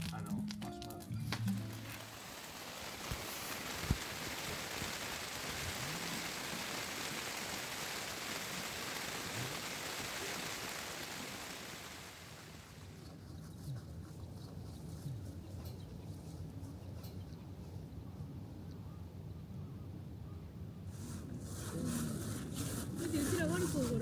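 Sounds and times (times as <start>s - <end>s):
heavy rain falling: 1.6s - 12.9s.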